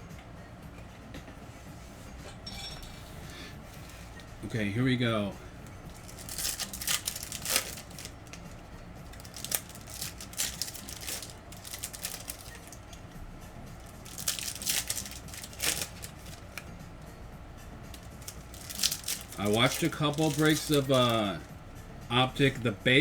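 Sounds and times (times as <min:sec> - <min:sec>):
plastic wrapping crinkling: 0:05.9 - 0:13.0, 0:13.8 - 0:16.6, 0:17.9 - 0:21.4.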